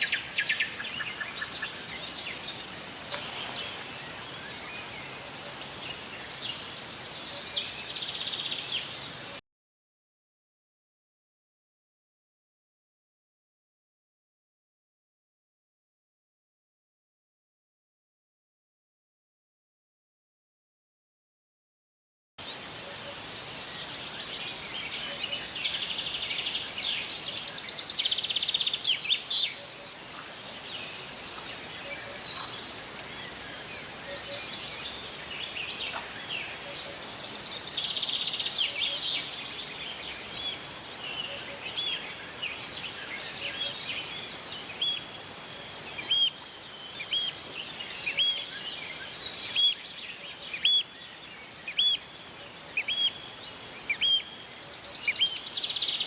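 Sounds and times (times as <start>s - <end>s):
steady outdoor hiss: 0.0s - 9.4s, 22.4s - 56.0s.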